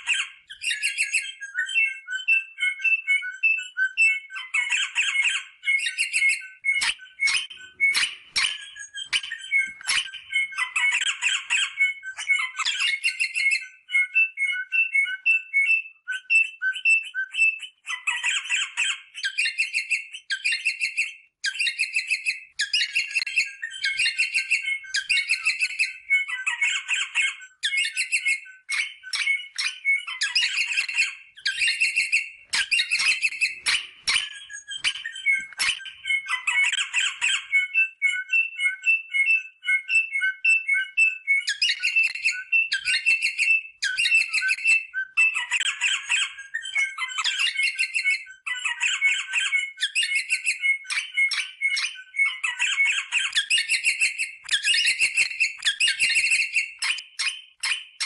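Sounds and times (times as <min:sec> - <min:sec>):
parrot piping notes: 0:17.9 - 0:39.8, 0:41.4 - 0:58.0
parrots chattering calls: 0:45.4 - 0:50.4.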